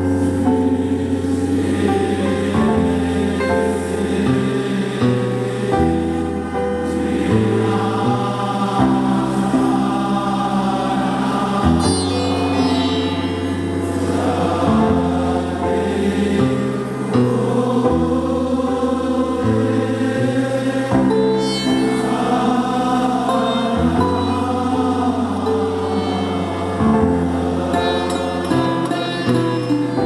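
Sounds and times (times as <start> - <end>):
voices chanting: 0.3 - 30.0
sustained low drone: 6.4 - 30.0.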